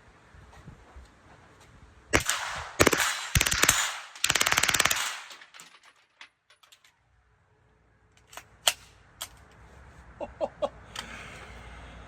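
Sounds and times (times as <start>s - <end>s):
rapid gunfire: 2.1s - 5.8s.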